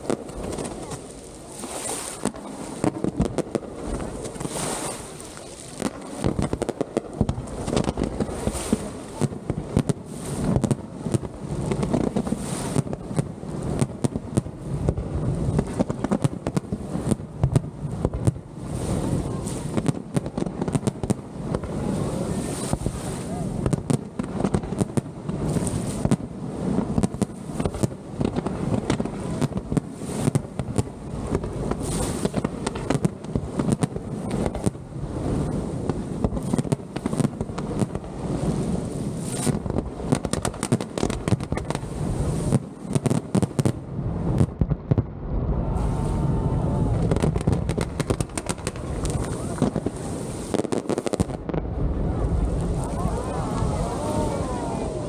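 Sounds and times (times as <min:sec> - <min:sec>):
fireworks bangs and crackles: 0:00.0 - 0:55.0
whistling firework shells: 0:45.8 - 0:51.4.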